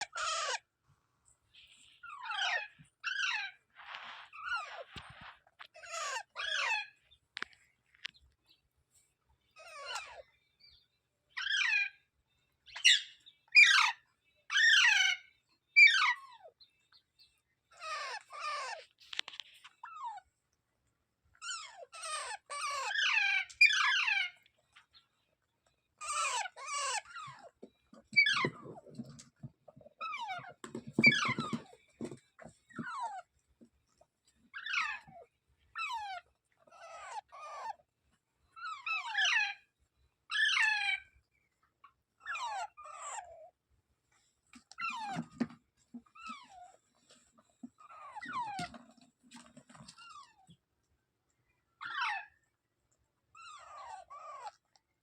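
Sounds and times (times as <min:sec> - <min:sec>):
parrot screeching: 0:00.0 - 0:00.6, 0:02.0 - 0:03.6, 0:05.8 - 0:07.0, 0:11.4 - 0:11.9, 0:14.5 - 0:15.2, 0:15.8 - 0:16.2, 0:17.8 - 0:18.8, 0:21.4 - 0:24.4, 0:26.0 - 0:27.5, 0:28.2 - 0:28.6, 0:34.6 - 0:35.1, 0:35.8 - 0:37.8, 0:38.6 - 0:39.6, 0:40.3 - 0:41.0, 0:51.8 - 0:52.3.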